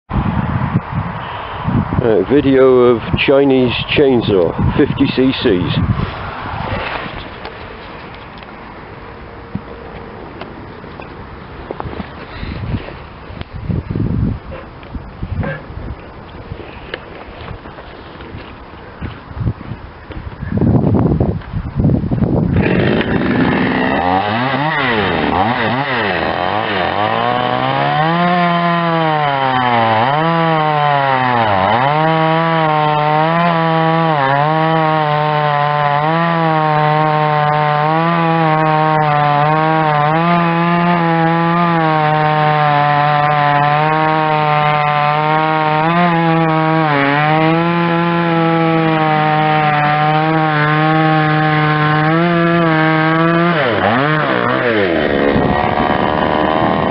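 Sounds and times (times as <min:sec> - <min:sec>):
chainsaw cutting wood: 0:22.5 - 0:56.9.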